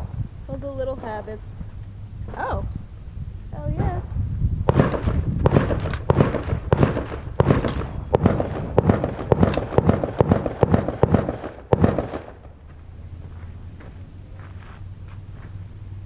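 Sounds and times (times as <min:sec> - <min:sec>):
semi-automatic gunshots: 0:04.7 - 0:12.6.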